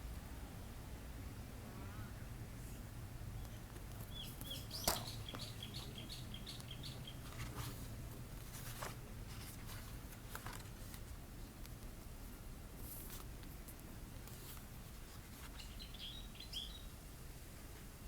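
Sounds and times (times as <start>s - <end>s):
small bird chirping: 4.0s - 7.4s, 15.3s - 16.9s.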